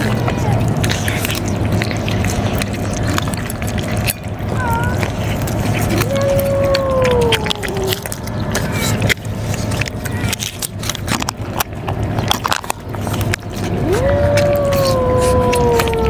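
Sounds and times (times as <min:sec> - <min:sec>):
clicks and rustles: 0:00.0 - 0:16.0
cat meowing: 0:04.6 - 0:05.0, 0:05.9 - 0:08.1, 0:13.8 - 0:16.0.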